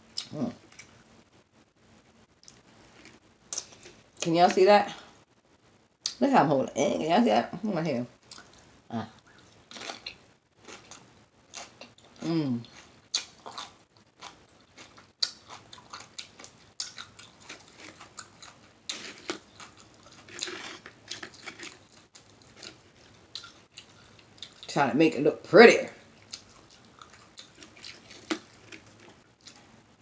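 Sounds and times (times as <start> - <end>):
chip crunching: 2.4 - 4.0, 9.4 - 24.7, 26.2 - 29.6.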